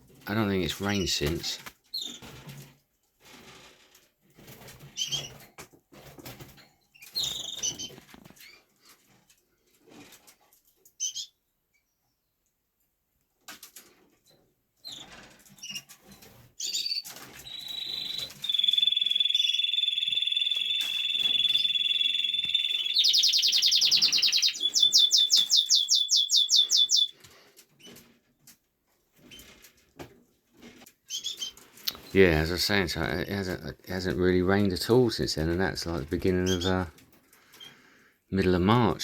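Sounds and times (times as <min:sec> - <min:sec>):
wing flutters: 0:16.0 - 0:27.1
canary singing trills: 0:16.6 - 0:27.1
soft bird chirps: 0:16.6 - 0:27.2.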